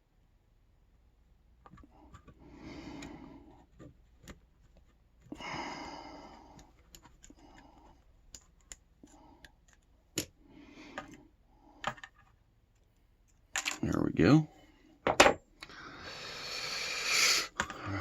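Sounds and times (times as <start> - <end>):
breathy exhalations: 5.3 - 6.6, 15.6 - 18.0.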